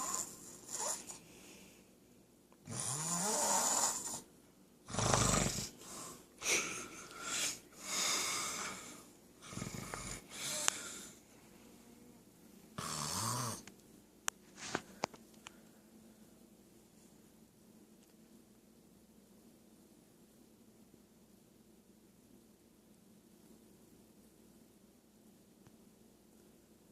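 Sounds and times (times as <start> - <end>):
man snoring: 0.0 - 1.2, 2.7 - 4.3, 4.9 - 11.1, 12.8 - 13.7.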